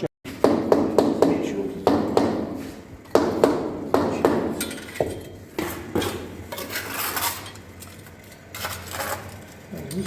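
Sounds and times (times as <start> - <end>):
scraping: 5.6 - 9.6.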